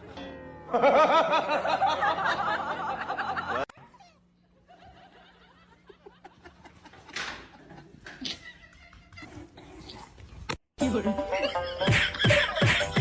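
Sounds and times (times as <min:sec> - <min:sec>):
person laughing: 0:11.3 - 0:13.0.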